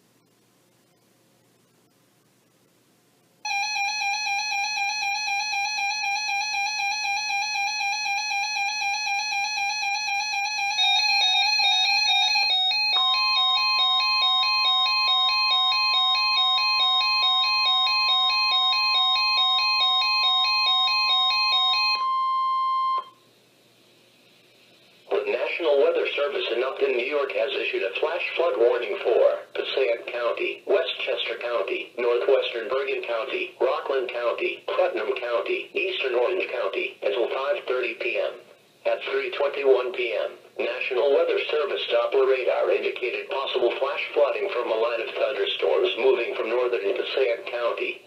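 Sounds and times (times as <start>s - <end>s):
steady high alarm tone: 3.4s - 23.2s
warbling electronic alert tone: 3.5s - 23.1s.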